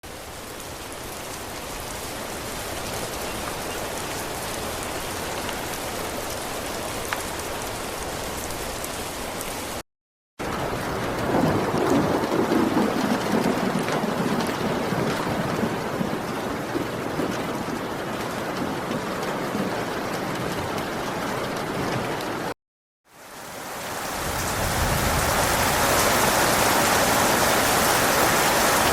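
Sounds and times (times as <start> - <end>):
steady rain falling: 0.0 - 9.8, 10.4 - 28.9
low rolling thunder: 10.5 - 22.1, 24.1 - 28.9.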